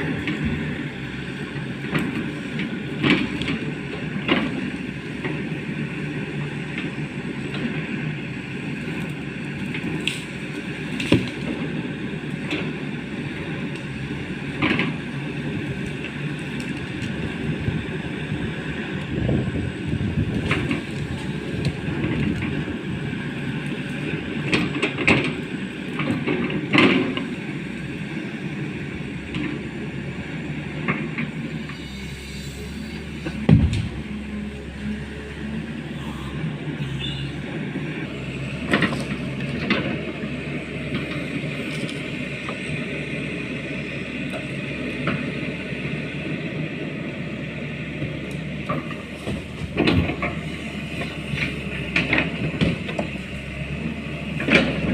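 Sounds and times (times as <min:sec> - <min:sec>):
excavator diesel engine running: 0:00.0 - 0:54.9
knocks and clanks: 0:33.2 - 0:34.1
heavy thump: 0:33.4 - 0:34.1.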